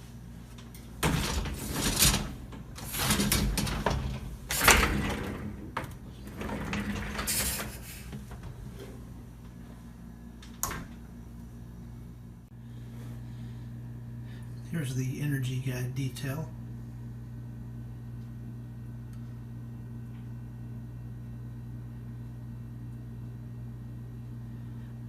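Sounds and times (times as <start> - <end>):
sliding and rattling: 0.5 - 9.2.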